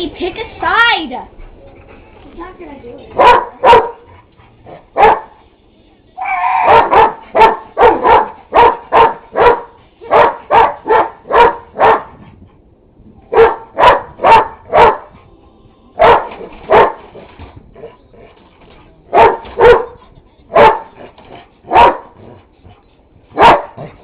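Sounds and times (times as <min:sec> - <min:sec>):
dog barking sharply: 0:03.2 - 0:04.0, 0:05.0 - 0:05.4, 0:06.6 - 0:12.1, 0:13.3 - 0:15.1, 0:16.0 - 0:17.1, 0:19.1 - 0:20.0, 0:20.6 - 0:20.9, 0:21.7 - 0:22.2, 0:23.4 - 0:24.0.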